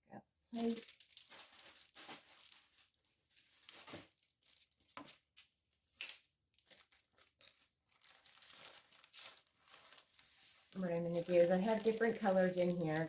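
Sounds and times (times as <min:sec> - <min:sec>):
dried moss crinkling and tearing: 0:00.6 - 0:13.0.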